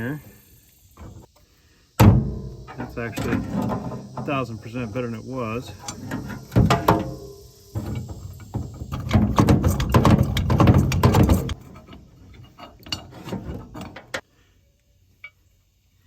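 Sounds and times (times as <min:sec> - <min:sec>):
metal latch clicking and clattering: 0:08.6 - 0:12.0.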